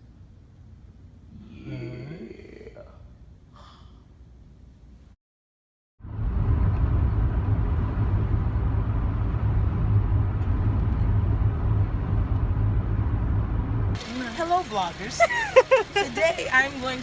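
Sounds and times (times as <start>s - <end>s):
car engine rumble: 6.0s - 17.0s.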